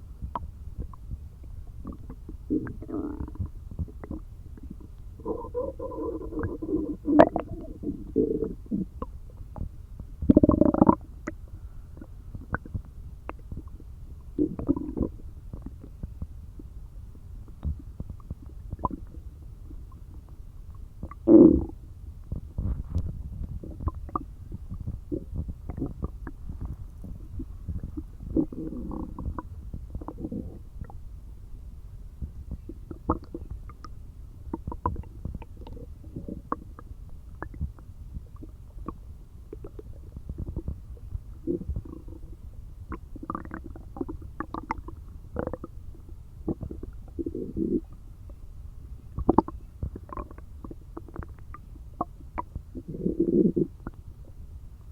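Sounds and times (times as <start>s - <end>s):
stomach growling and gurgling: 0.1s - 31.0s, 32.2s - 48.4s, 49.1s - 54.6s.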